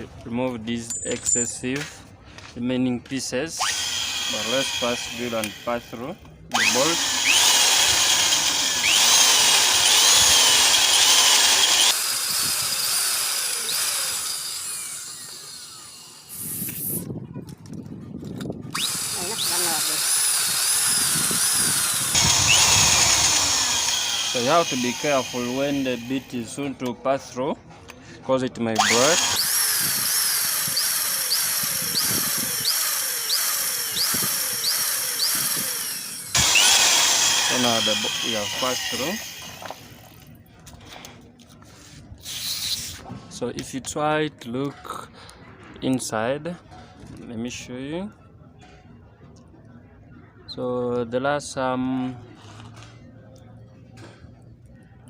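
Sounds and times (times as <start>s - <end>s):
electric drill boring through metal: 3.6s - 17.0s, 18.7s - 26.5s, 28.8s - 40.2s.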